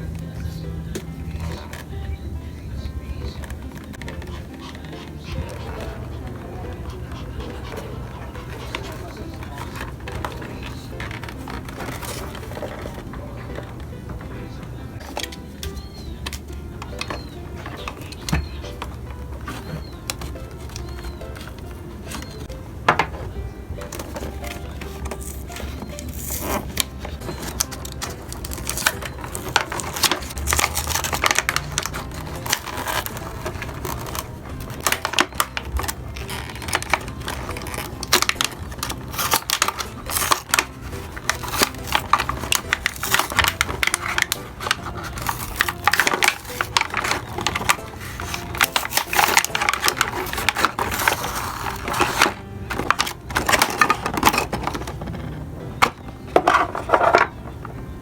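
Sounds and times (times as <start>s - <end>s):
packaging rustling: 2.8s - 58.0s
plastic toy pieces clicking: 24.1s - 55.2s.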